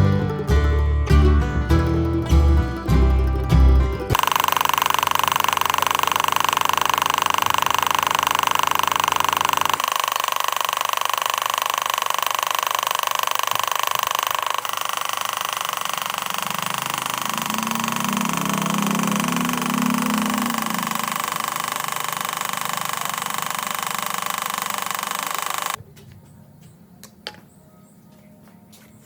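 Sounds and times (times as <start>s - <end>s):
workshop machine whining: 0.0s - 25.8s
low hum: 13.4s - 25.8s.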